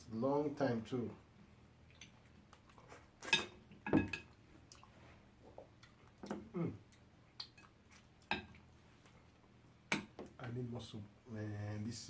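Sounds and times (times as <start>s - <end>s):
dishes and cutlery clinking: 2.9s - 4.4s, 7.5s - 8.6s
mouth eating noises: 4.6s - 8.7s.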